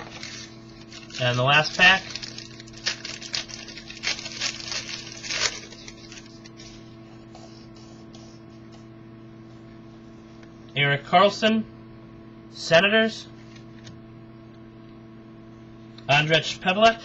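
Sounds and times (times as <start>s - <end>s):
card pack wrapper tearing: 0.0s - 6.5s
steady electrical hum: 0.0s - 17.0s.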